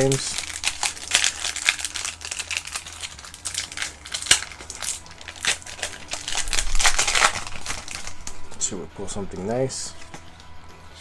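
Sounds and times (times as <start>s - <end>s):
foil wrapper crinkling: 0.0s - 10.4s.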